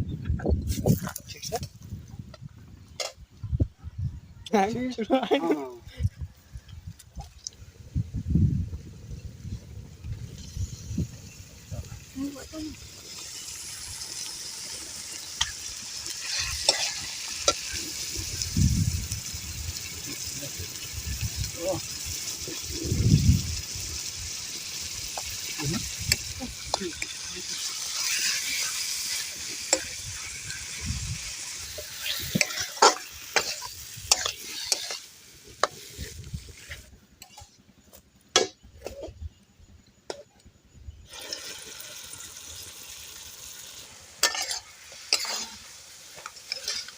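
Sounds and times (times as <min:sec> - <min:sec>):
meat sizzling in a pan: 0:10.1 - 0:37.4, 0:41.1 - 0:46.9
spatula clinking and scraping pan: 0:15.4 - 0:17.8, 0:26.2 - 0:30.4, 0:31.4 - 0:35.8, 0:37.2 - 0:37.5, 0:44.2 - 0:46.9.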